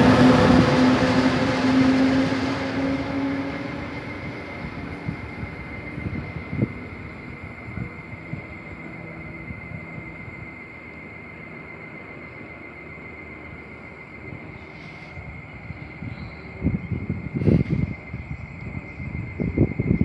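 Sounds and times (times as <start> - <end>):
wind buffeting microphone: 0.0 - 10.6, 15.2 - 20.0.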